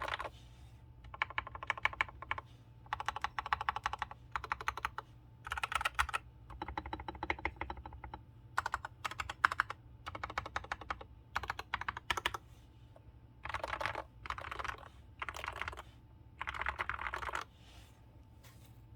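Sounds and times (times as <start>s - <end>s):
mechanical keyboard typing: 0.0s - 0.3s, 1.0s - 12.4s, 13.4s - 15.8s, 16.4s - 17.5s.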